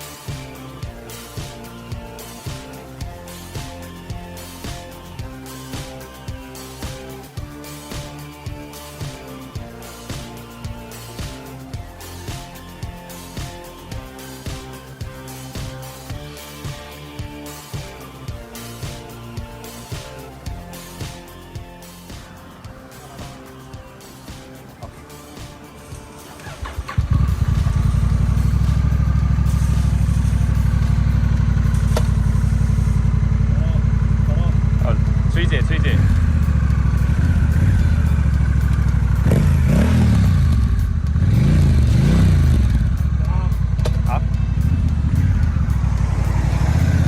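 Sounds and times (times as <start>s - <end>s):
background music with steady beat: 0.0s - 47.0s
motorcycle engine starting and idling: 26.1s - 47.0s.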